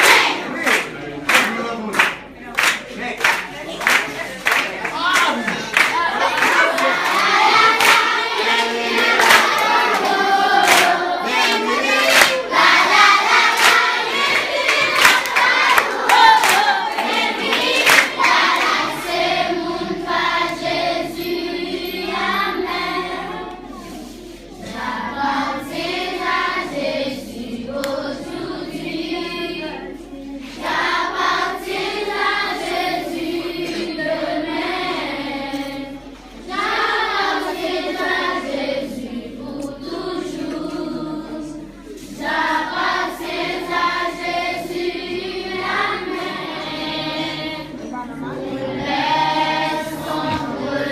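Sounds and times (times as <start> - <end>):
group singing: 0.0 - 0.8, 5.4 - 50.9
rhythmic hand clapping: 0.0 - 23.6, 27.7 - 28.8.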